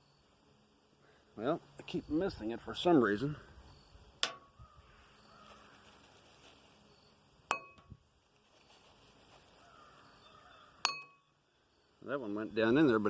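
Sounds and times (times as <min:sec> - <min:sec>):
ringing clink from metal bowl: 0:07.0 - 0:07.9, 0:10.8 - 0:11.3.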